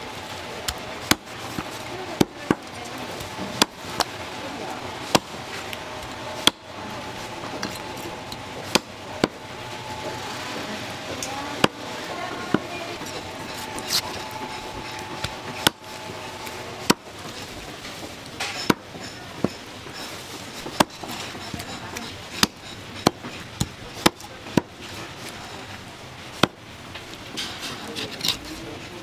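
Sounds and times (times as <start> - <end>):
cleaver chopping on wooden board: 0.7 - 4.1, 5.1 - 5.4, 6.4 - 6.7, 8.6 - 9.4, 18.5 - 24.7, 26.4 - 26.6.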